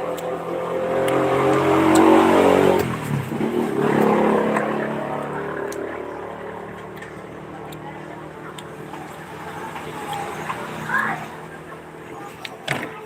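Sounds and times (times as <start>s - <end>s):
vehicle engines passing: 0.0s - 13.0s.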